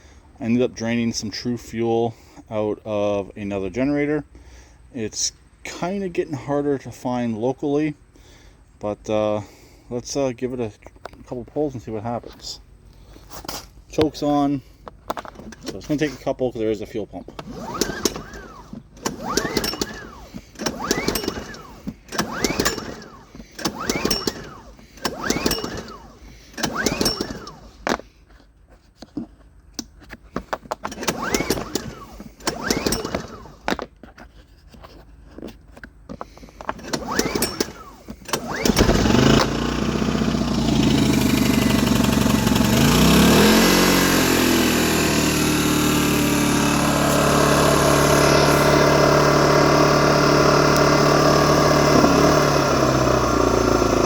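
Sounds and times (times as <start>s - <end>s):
recoil starter pulls: 10.8s - 54.0s
generator engine running: 12.9s - 28.3s, 30.6s - 33.9s, 36.0s - 54.0s.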